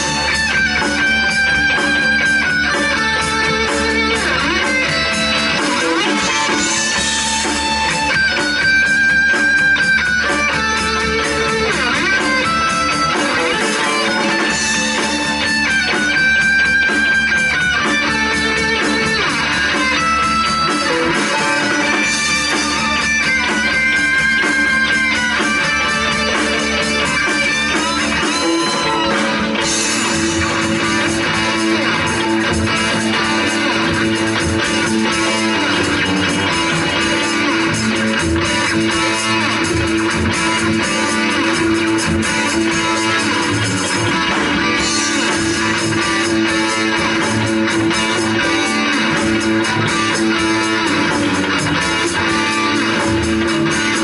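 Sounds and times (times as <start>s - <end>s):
bass guitar: 0.0s - 54.0s
electric guitar held notes: 0.0s - 54.0s
steady drum beat: 0.0s - 54.0s.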